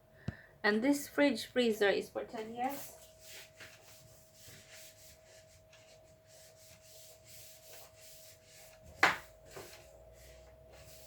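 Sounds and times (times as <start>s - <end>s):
faint steady hum: 0.0s - 11.0s
cloth scrubbing inside a fridge: 2.4s - 11.0s.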